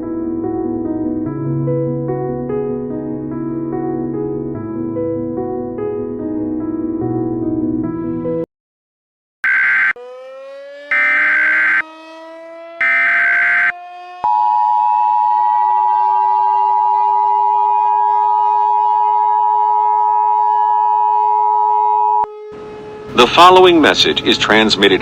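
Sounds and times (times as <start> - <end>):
screechy data tones: 9.4 - 10.0, 10.9 - 11.8, 12.8 - 13.7
siren winding up: 9.4 - 23.2
two-tone attention signal: 12.8 - 17.4.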